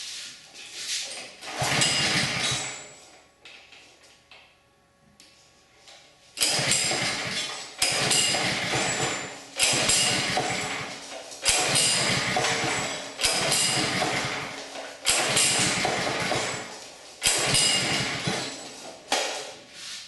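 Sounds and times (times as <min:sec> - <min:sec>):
recoil starter rope rasp: 0:00.8 - 0:02.9, 0:06.4 - 0:19.0.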